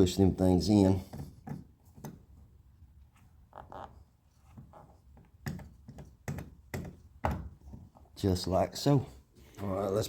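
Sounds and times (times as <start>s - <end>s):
rubber weatherstrip rubbing: 3.0s - 8.1s.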